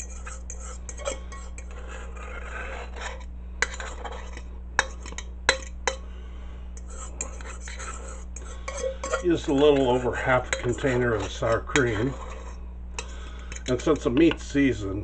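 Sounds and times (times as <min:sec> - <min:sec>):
spoon scraping container: 0:00.0 - 0:05.7, 0:06.8 - 0:14.4
spoon tapping dish: 0:04.8 - 0:06.0, 0:13.0 - 0:14.4.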